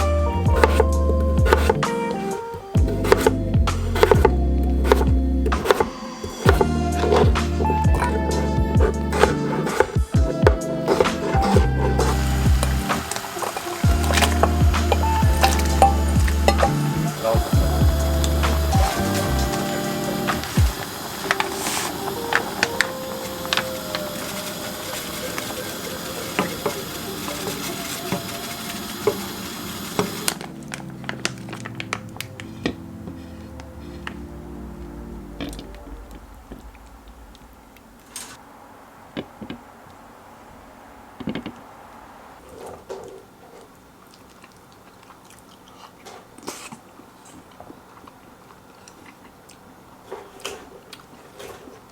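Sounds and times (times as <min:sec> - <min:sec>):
frying hiss: 0:00.0 - 0:44.9
person chewing: 0:44.0 - 0:51.8.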